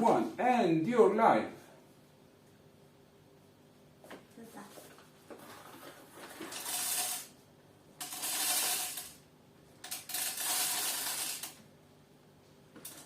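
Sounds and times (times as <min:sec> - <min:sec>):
coffee beans poured from bag: 0:06.2 - 0:07.3.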